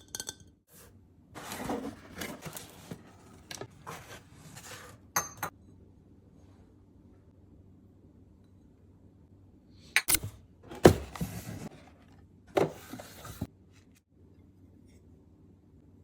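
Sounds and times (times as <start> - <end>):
packaging scraping and rustling: 1.4 - 4.9.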